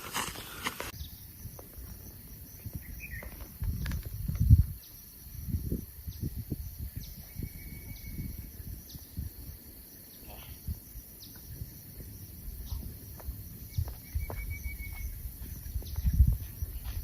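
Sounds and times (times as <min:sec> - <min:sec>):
rustling near microphone: 0:00.0 - 0:01.0
high-pitched insect chorus: 0:00.0 - 0:17.0.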